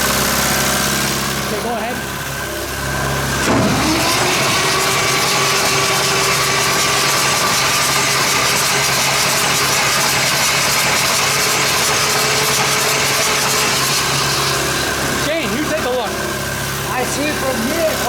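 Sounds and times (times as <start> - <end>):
diesel engine starter cranking: 2.9 - 8.0.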